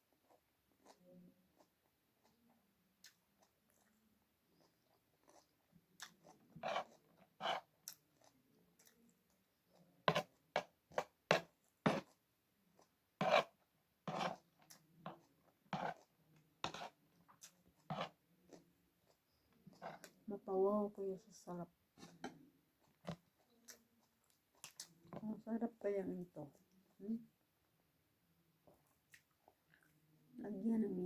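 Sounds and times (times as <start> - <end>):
crunchy chewing of food: 0.2 - 20.2, 22.0 - 25.2.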